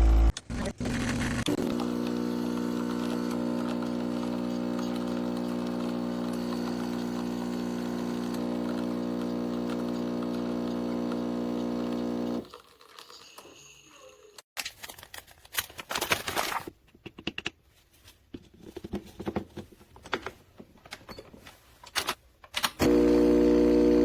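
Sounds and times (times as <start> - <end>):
espresso machine pump humming: 1.5 - 12.6, 22.8 - 24.0.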